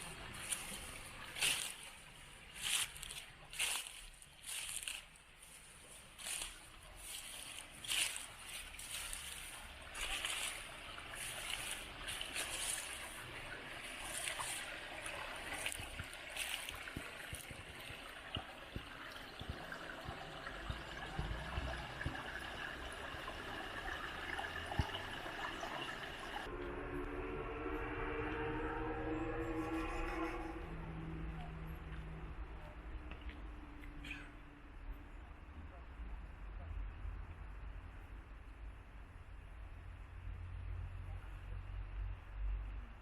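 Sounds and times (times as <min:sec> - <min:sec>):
stream water trickling: 0:00.0 - 0:26.6
water splashes: 0:06.1 - 0:26.5.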